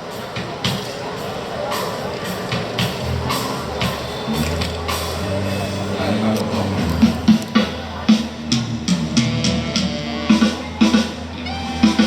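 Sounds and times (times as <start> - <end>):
drum kit with cymbals: 0.0 - 12.0
low held bass notes: 3.0 - 12.0.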